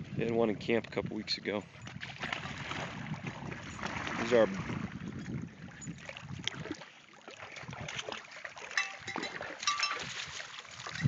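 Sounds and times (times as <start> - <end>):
small bells jingling: 8.8 - 10.2.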